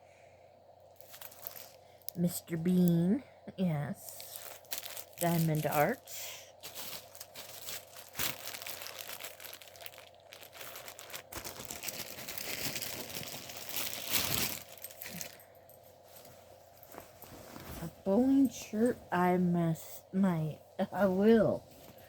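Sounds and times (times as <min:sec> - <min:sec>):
plastic packaging crinkling: 0:01.0 - 0:02.4, 0:03.9 - 0:15.4.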